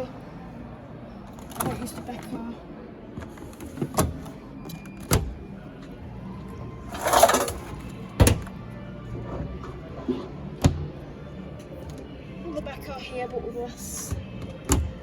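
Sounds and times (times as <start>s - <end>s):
faint background music: 0.0s - 15.0s
washing machine door clunks: 8.2s - 8.5s.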